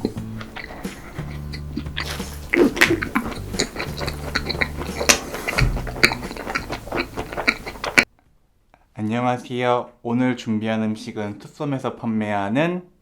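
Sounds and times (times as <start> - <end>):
background music with low notes: 0.0 - 8.0
crunches and clicks of eating: 0.0 - 8.1.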